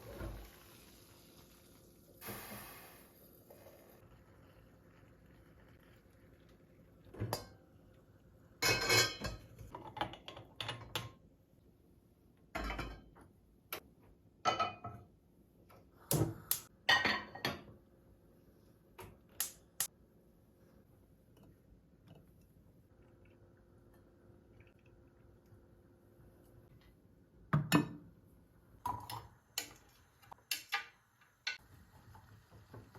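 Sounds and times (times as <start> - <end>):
dishes and cutlery clinking: 8.6 - 11.2.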